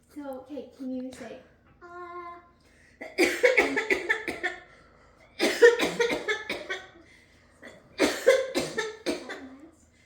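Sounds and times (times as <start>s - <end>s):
child coughing: 3.0s - 4.7s, 5.4s - 7.0s, 8.0s - 9.6s.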